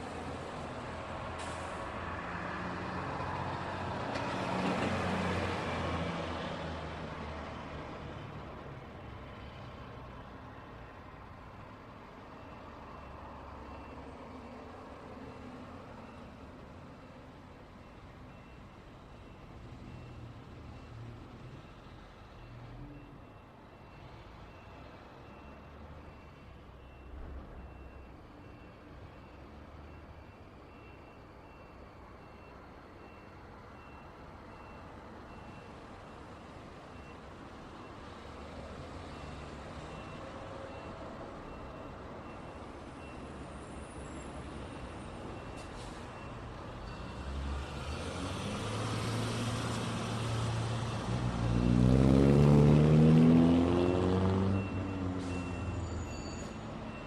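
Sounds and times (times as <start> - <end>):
road traffic passing: 0.0 - 57.0.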